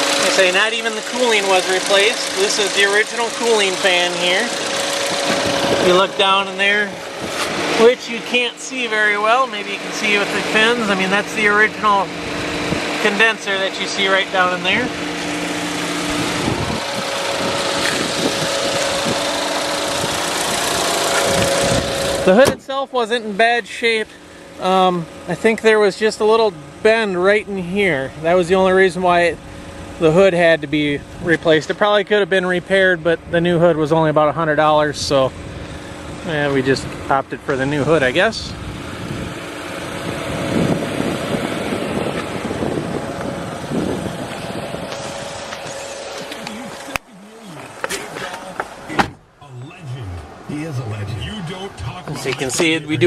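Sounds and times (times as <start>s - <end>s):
car engine idling: 0.0s - 53.0s
constant noisy hiss: 42.0s - 53.0s.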